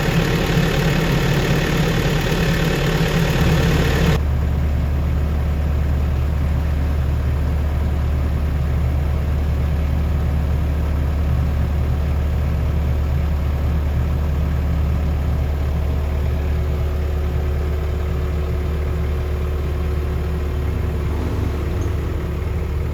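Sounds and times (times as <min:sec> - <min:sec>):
diesel engine idling: 0:00.0 - 0:22.9.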